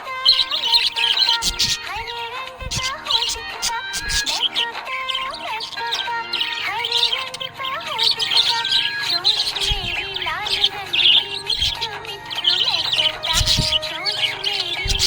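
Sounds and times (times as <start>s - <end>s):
budgies chirping and twittering: 0.0s - 15.0s
song playing in background: 0.0s - 15.0s.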